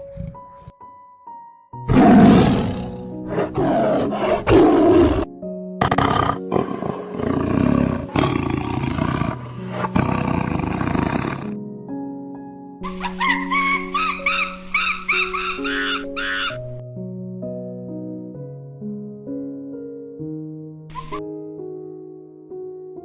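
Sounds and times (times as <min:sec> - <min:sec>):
background music with held notes: 0:00.0 - 0:23.0
big cat roaring: 0:01.9 - 0:11.6.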